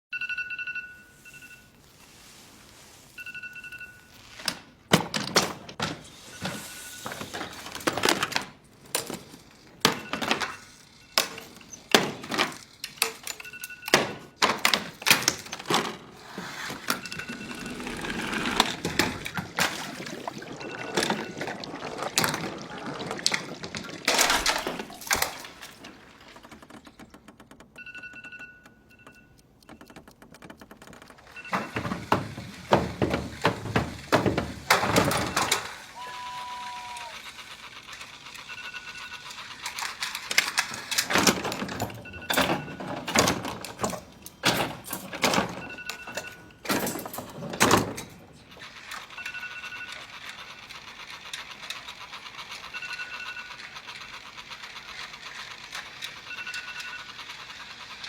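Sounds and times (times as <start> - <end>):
alarm clock short high beeps: 0.1 - 1.8, 3.2 - 4.4, 13.4 - 14.0, 27.8 - 30.0, 38.3 - 39.4, 49.1 - 50.1, 52.5 - 53.7, 56.2 - 57.3.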